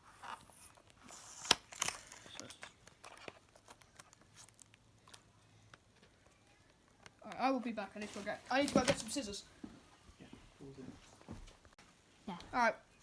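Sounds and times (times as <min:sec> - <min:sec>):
plastic packaging crinkling: 0:01.1 - 0:05.3.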